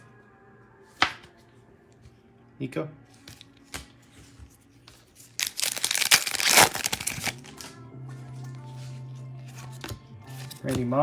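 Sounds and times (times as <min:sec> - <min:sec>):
wrapper tearing and crackling: 0:05.4 - 0:07.7.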